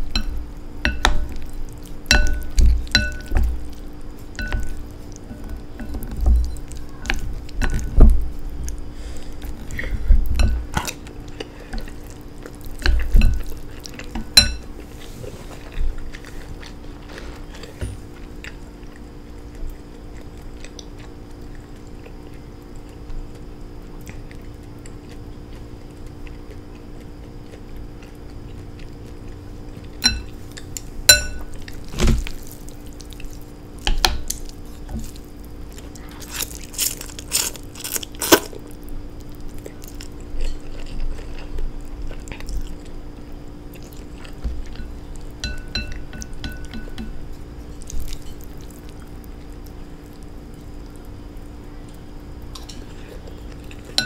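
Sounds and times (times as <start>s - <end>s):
utensils clinking against a bowl: 0.0s - 3.5s, 4.3s - 8.0s, 12.8s - 14.7s, 30.0s - 31.6s, 44.7s - 47.2s
steady low hum: 0.0s - 54.0s.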